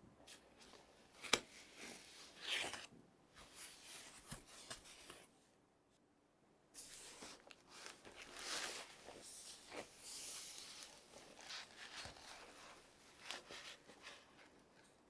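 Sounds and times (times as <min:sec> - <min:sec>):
packaging rustling and sliding: 0:06.8 - 0:14.9.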